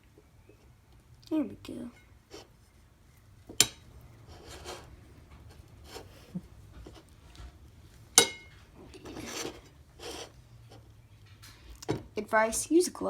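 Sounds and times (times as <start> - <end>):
food rubbing and scraping: 2.2 - 11.5.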